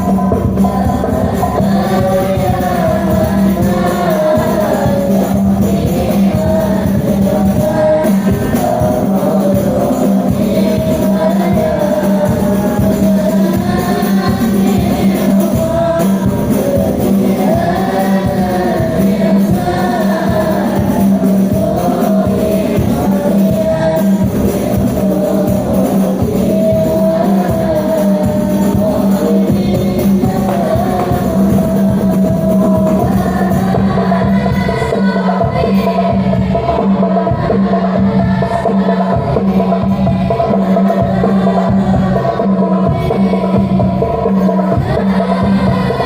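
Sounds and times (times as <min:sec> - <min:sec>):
steady drone: 0:00.0 - 0:35.6
frame drums with jingles: 0:00.0 - 0:46.0
high voice singing: 0:00.0 - 0:46.0
other voices singing: 0:00.0 - 0:46.0.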